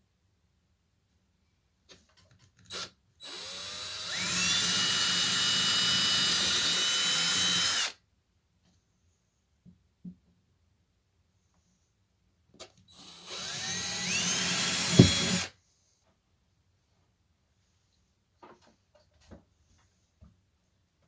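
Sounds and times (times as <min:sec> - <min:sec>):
power drill whining: 0:02.7 - 0:08.0, 0:12.9 - 0:15.5.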